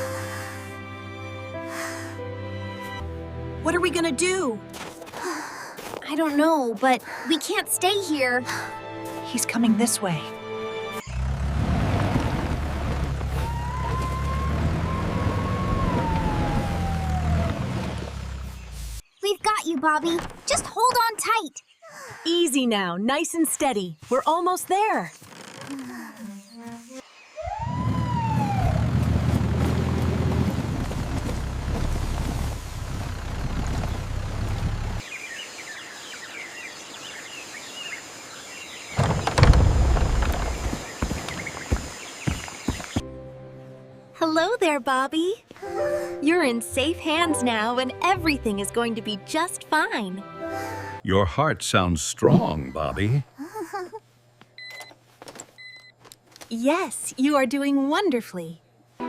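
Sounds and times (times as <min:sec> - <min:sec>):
ambulance engine rumbling: 0:11.0 - 0:18.8, 0:27.4 - 0:35.0
jungle ambience: 0:11.0 - 0:44.7
birds chirping: 0:13.3 - 0:29.0, 0:33.4 - 0:44.4
siren wailing: 0:13.4 - 0:17.7, 0:27.4 - 0:29.9.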